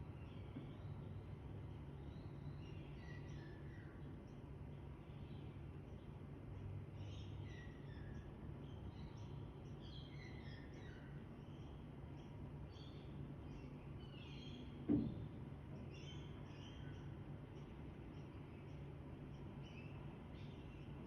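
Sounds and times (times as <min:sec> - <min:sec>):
small birds chirping: 0:00.0 - 0:21.0
steady low hum: 0:00.0 - 0:21.0
dull thump: 0:14.9 - 0:15.2.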